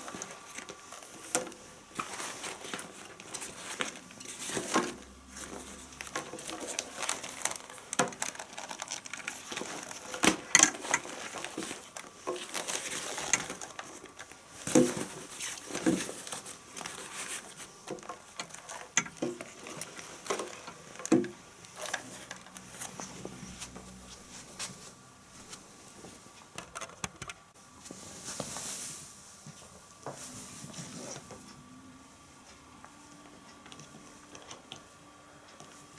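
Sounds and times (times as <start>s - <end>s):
packaging crinkling: 2.0s - 23.8s.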